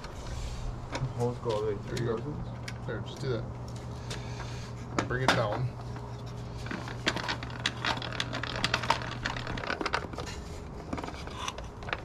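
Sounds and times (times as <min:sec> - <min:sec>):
low steady hum: 0:00.0 - 0:12.0
metal clicks and rattles: 0:06.6 - 0:10.3.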